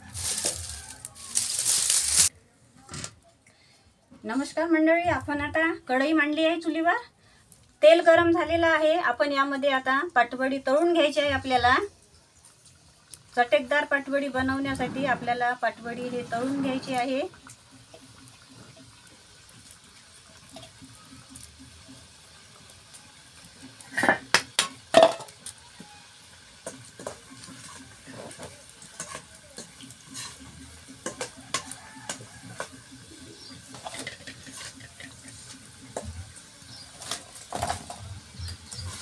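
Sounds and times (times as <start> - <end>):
food sizzling in hot oil: 0.0 - 2.3, 7.8 - 39.0
metal spoon clattering against pan: 26.6 - 32.8, 33.7 - 36.1.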